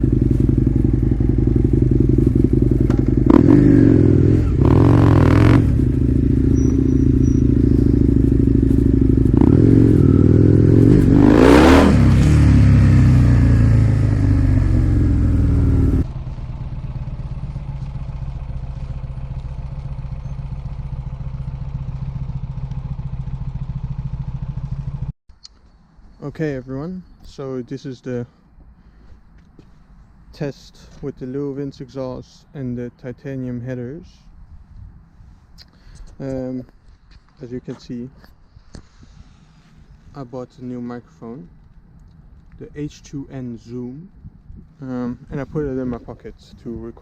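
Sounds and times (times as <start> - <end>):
motorcycle engine idling: 0.0 - 25.1
motorcycle engine revving: 0.0 - 25.1.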